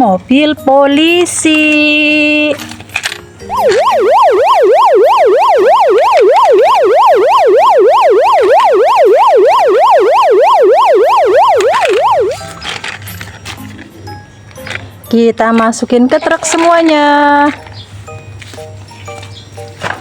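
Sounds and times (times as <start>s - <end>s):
toy siren yelping: 3.5s - 12.6s.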